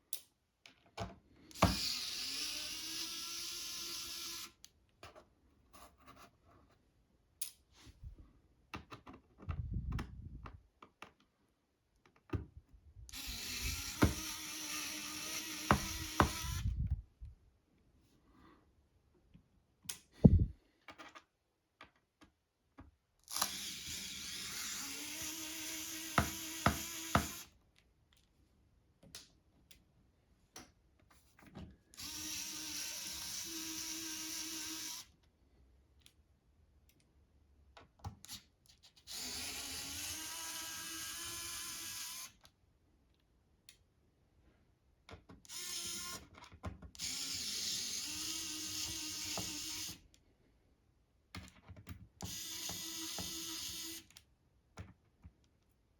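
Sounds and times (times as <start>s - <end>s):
cordless power driver running: 13.1s - 16.8s.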